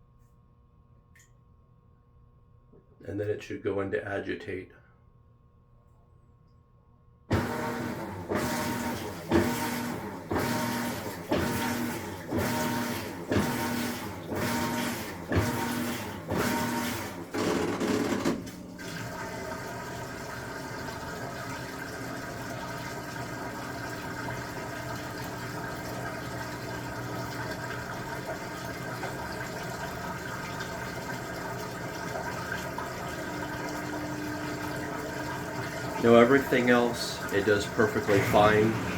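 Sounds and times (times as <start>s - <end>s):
water running: 7.3s - 17.1s, 18.1s - 38.9s
motor hum: 7.3s - 38.9s
washer agitating: 7.3s - 38.9s.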